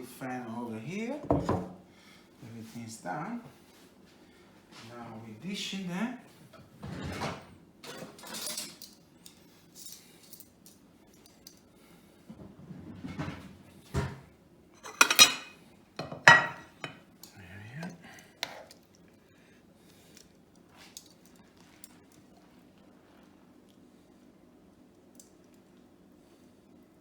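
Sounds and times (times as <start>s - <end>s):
serving utensils clinking on bowls: 14.8s - 17.0s.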